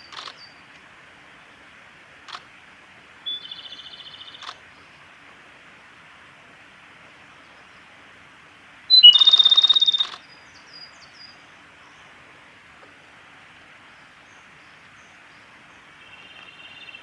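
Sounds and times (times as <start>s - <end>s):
background hiss: 0.0s - 17.0s
bird singing with rattling trill: 3.3s - 4.6s, 8.9s - 11.4s.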